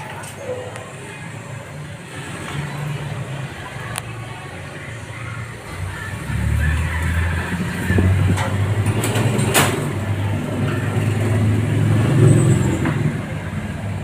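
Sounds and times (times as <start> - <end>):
engine humming: 0.0 - 14.0.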